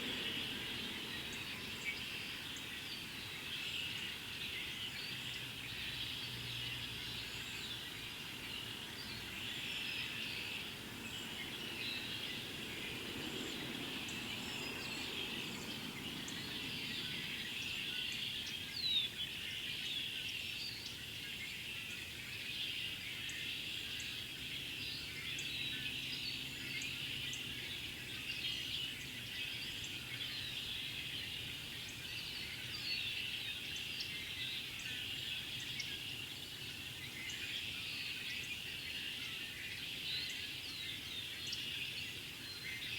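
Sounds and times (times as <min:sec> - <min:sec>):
flock of birds calling and singing: 0:00.0 - 0:06.3, 0:07.0 - 0:42.9.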